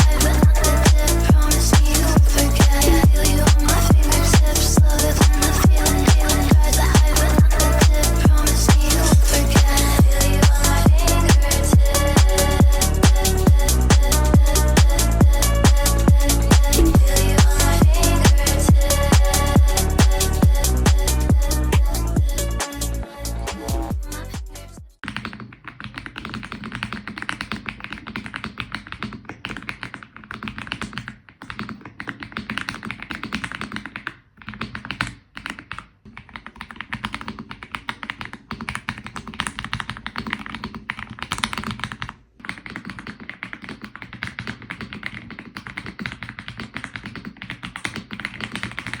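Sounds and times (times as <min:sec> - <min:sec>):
fast mechanical keyboard typing: 0:25.0 - 0:49.0.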